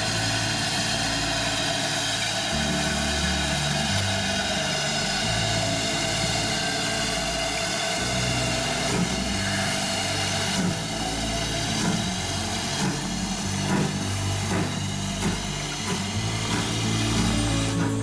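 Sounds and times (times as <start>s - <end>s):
low droning tones: 0.0s - 18.0s
train running rumble: 0.0s - 18.0s.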